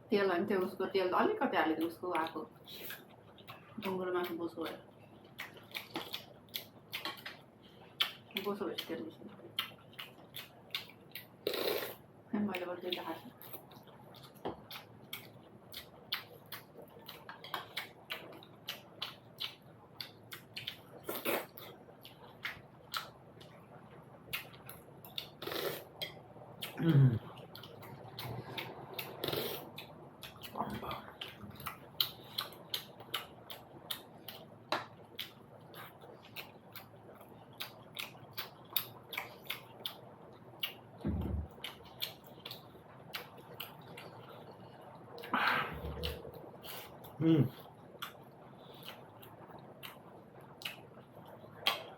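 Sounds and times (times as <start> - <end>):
wet chewing and lip-smacking: 1.8 - 51.9
dull low thump: 41.0 - 41.6.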